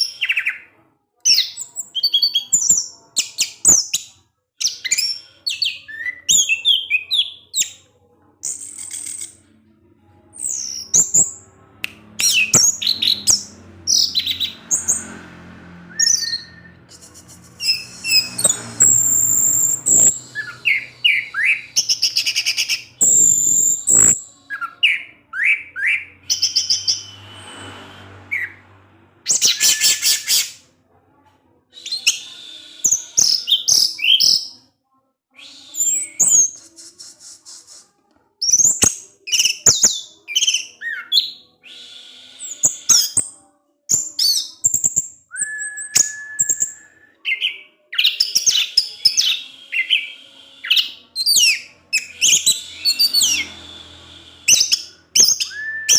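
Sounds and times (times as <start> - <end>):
thrush singing: 4.8 - 30.7, 35.4 - 55.9.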